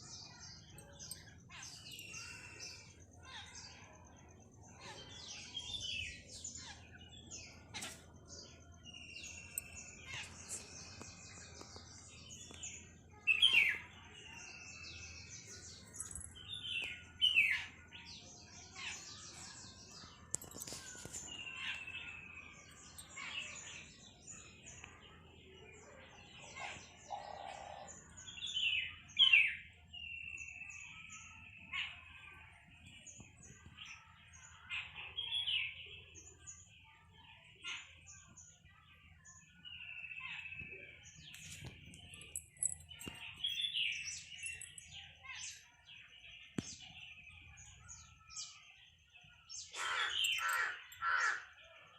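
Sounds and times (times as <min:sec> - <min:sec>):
songbirds chirping and calling: 0:00.0 - 0:51.9.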